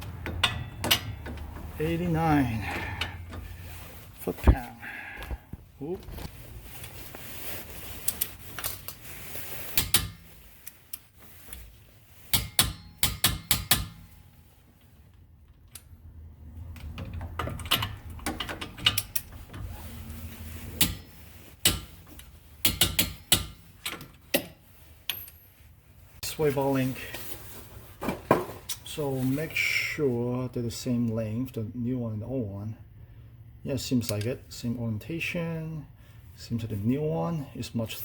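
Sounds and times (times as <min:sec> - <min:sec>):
tools and metal parts clinking: 0:00.0 - 0:01.8, 0:20.8 - 0:25.7.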